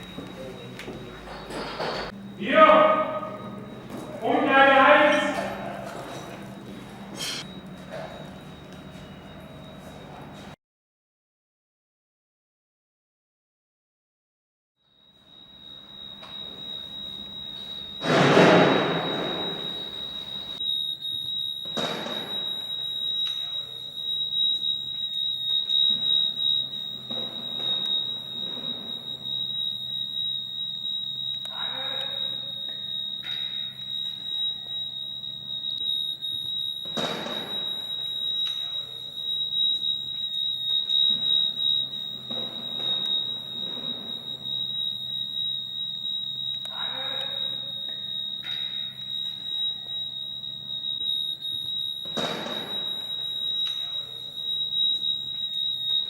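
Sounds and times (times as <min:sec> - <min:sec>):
fire alarm tone: 0:00.0 - 0:10.6, 0:14.8 - 0:56.0
loud thud: 0:18.0 - 0:19.6.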